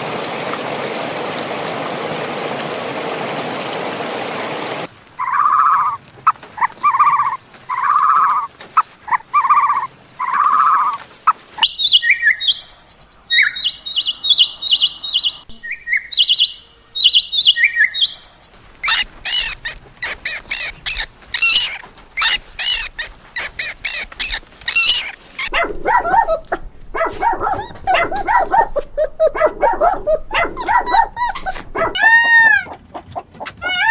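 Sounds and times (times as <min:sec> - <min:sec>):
pitched animal calls: 0:05.2 - 0:12.6, 0:18.8 - 0:33.9
bird chirping song: 0:11.6 - 0:26.4, 0:27.0 - 0:32.0.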